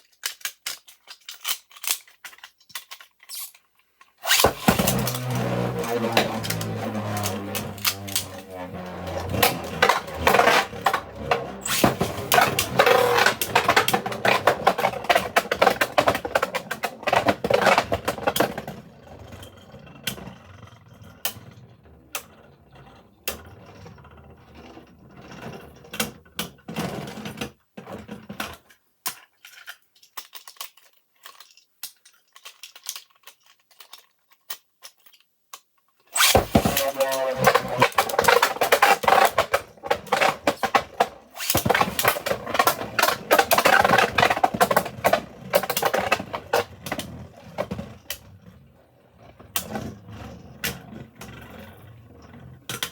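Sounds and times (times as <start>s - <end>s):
plastic spinning tops clashing: 4.2s - 18.7s, 36.2s - 48.6s.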